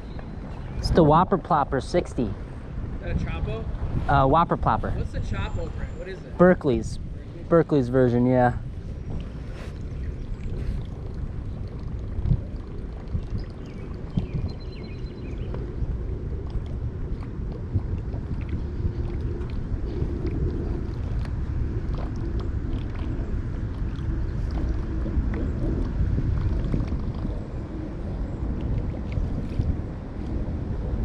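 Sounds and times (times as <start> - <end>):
wind rumbling on microphone: 0.0 - 31.0
water sloshing around wading legs: 8.6 - 31.0.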